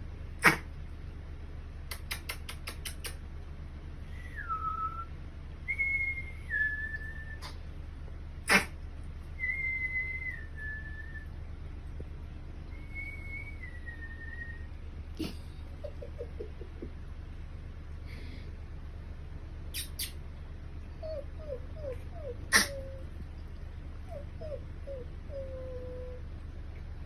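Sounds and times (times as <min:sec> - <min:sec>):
quick clicks: 0:01.9 - 0:03.2.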